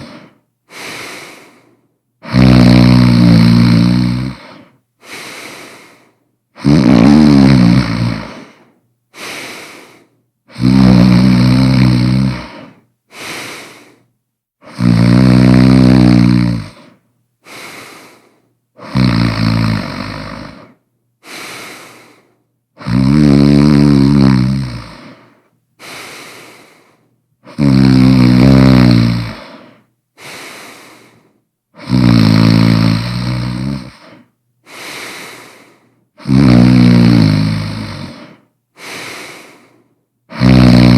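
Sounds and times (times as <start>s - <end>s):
quiet breath: 0.0s - 2.3s, 4.3s - 6.3s, 8.2s - 10.6s, 12.3s - 14.8s, 16.6s - 19.0s, 20.3s - 22.6s, 24.8s - 27.7s, 29.2s - 31.9s, 33.0s - 36.3s, 37.9s - 40.4s
person snoring loudly: 0.0s - 6.0s, 6.6s - 8.6s, 9.2s - 14.0s, 14.6s - 22.2s, 22.8s - 40.9s.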